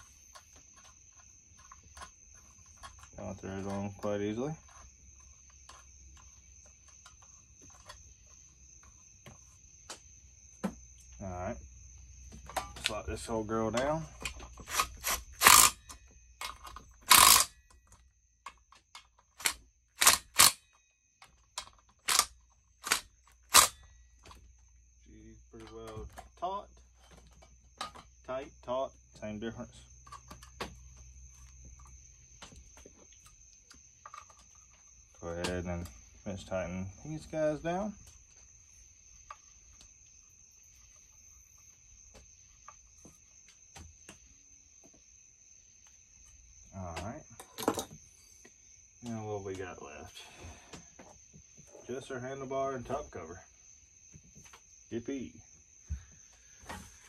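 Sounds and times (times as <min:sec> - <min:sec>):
metal parts clicking: 0:13.7 - 0:20.7, 0:21.3 - 0:23.9.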